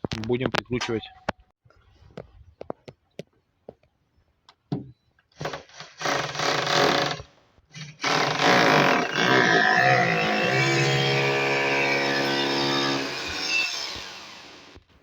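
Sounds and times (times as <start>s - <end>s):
power drill whining: 5.4s - 14.9s.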